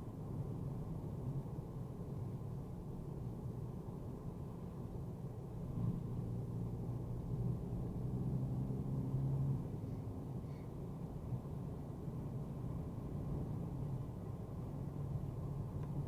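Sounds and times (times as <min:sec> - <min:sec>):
car engine drone: 0:04.6 - 0:16.0.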